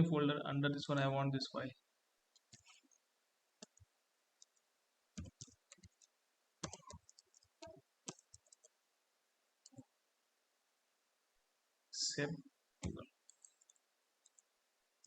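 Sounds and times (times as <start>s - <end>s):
mouse and keyboard clicking: 5.2s - 8.7s.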